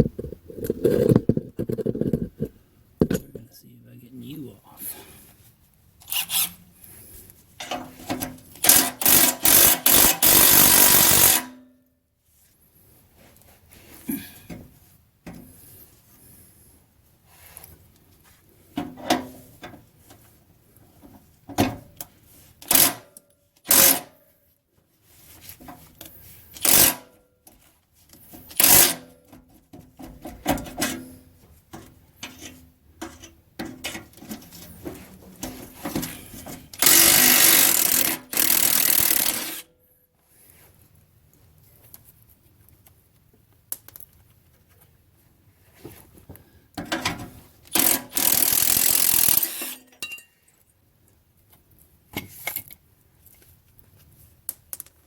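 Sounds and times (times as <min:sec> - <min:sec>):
power tool bursts on bolts: 0:06.0 - 0:06.6, 0:08.6 - 0:11.6, 0:22.6 - 0:24.2, 0:26.6 - 0:27.2, 0:28.5 - 0:29.1, 0:36.8 - 0:39.7, 0:47.7 - 0:49.9.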